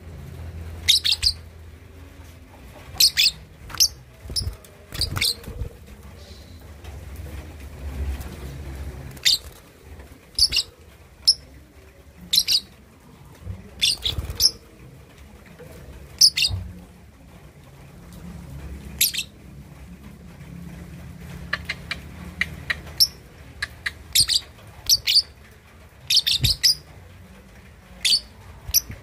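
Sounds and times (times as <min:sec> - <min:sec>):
lovebird chirping: 0:00.8 - 0:01.5, 0:03.0 - 0:05.6, 0:10.4 - 0:11.4, 0:12.3 - 0:12.7, 0:26.1 - 0:26.9.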